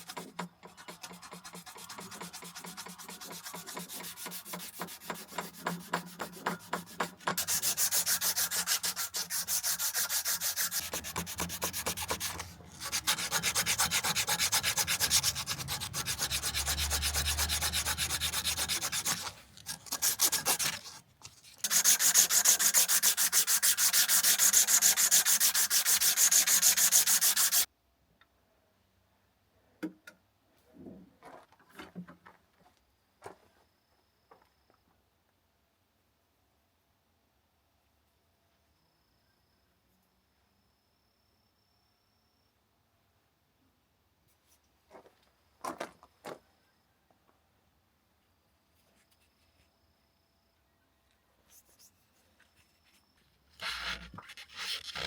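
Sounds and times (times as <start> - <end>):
knife blade being sanded: 0.0 - 27.7.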